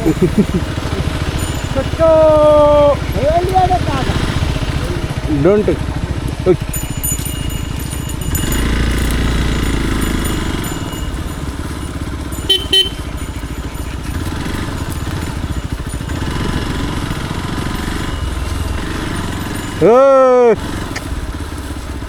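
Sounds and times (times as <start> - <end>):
motorcycle engine running: 0.0 - 22.0
motorcycle throttle blips: 0.0 - 22.0.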